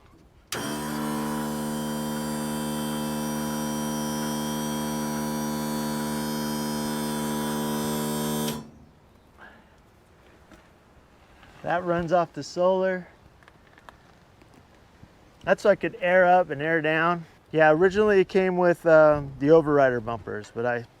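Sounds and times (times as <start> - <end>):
air compressor electric buzz: 0.5 - 9.0.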